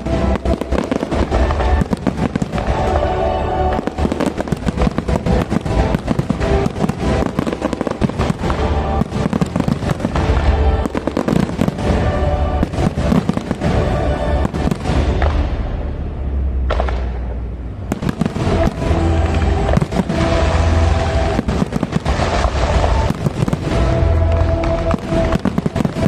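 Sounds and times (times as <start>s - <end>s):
fireworks bangs and crackles: 0.0s - 26.0s
music for fireworks show: 0.0s - 26.0s.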